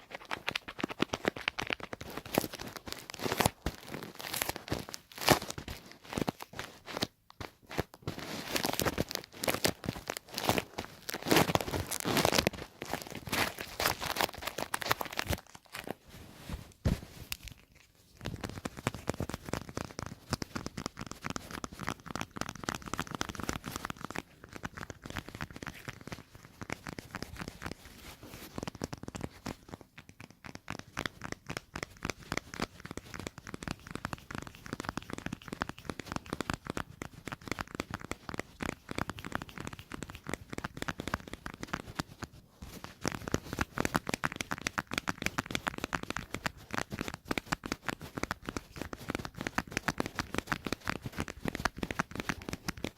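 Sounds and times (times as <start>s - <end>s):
tacky peeling noises: 0.0s - 52.9s
rapid crackly tapping: 18.2s - 52.9s.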